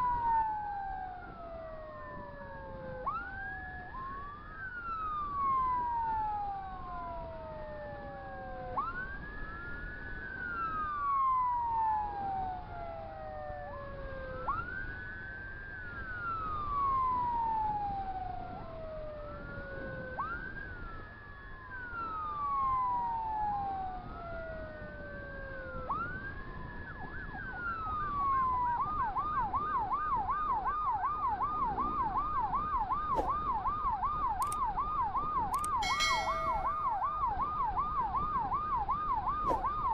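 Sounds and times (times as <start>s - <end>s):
electronic emergency sirens wailing: 35.6s - 36.9s
siren fast warble: 35.6s - 37.0s.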